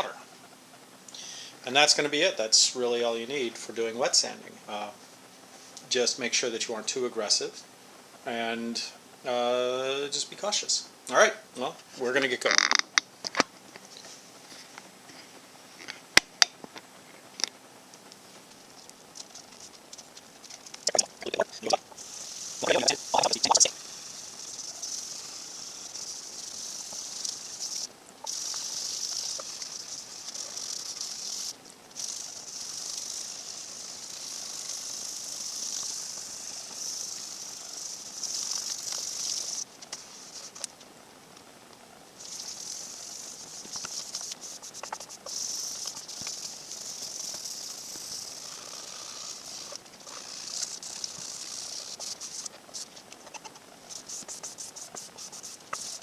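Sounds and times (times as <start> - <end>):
sandpaper scratching wet surface: 22.0 - 40.7, 42.3 - 56.0.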